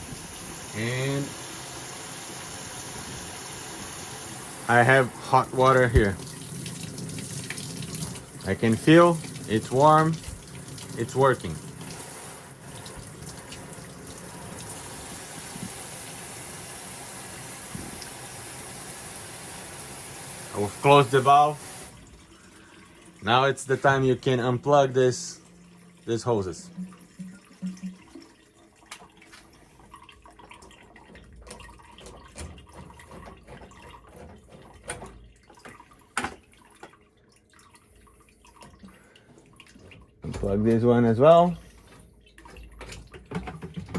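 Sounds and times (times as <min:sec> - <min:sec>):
water running: 0:00.0 - 0:43.9.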